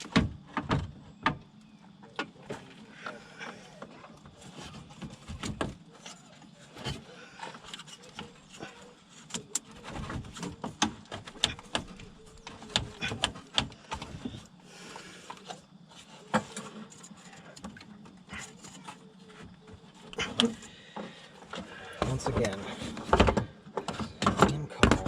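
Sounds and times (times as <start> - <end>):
plastic and metal parts knocking: 9.3 - 14.4, 17.6 - 25.0.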